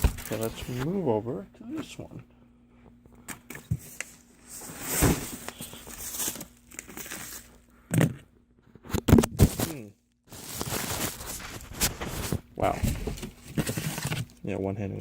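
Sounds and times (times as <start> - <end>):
packaging crinkling and tearing: 0.0 - 0.8, 4.9 - 7.6, 8.9 - 14.4.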